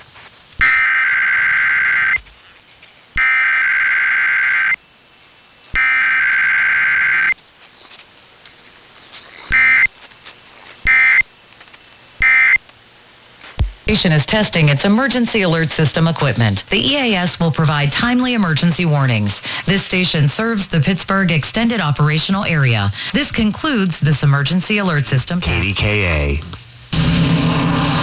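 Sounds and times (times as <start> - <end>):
two-tone digital screeches: 0.6 - 2.2, 3.2 - 4.8, 5.8 - 7.4, 9.5 - 9.9, 10.9 - 11.2, 12.2 - 12.6.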